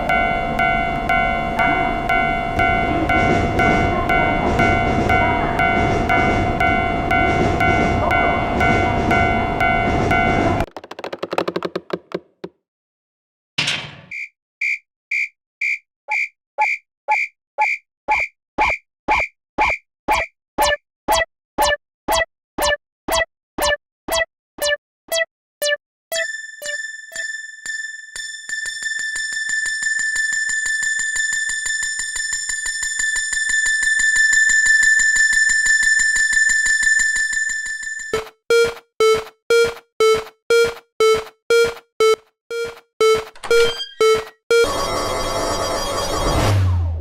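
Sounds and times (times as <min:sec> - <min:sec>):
high electronic ringing tone: 0:00.0 - 0:10.7, 0:25.6 - 0:46.6
level-crossing bell ringing: 0:00.0 - 0:10.7, 0:26.2 - 0:46.4.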